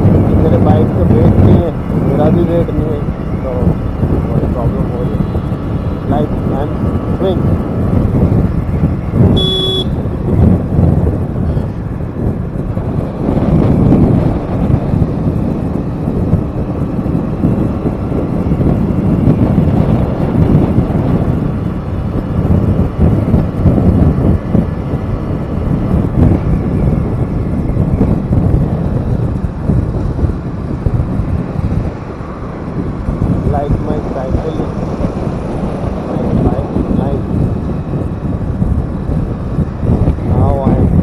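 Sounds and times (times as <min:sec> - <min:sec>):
road noise: 0:00.0 - 0:41.0
wind buffeting microphone: 0:00.0 - 0:41.0.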